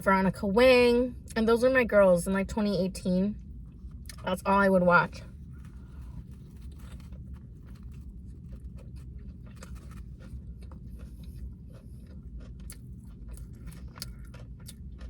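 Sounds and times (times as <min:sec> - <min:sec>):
low steady hum: 0:00.0 - 0:15.0
close chewing with crunches: 0:03.4 - 0:04.4, 0:05.2 - 0:15.0.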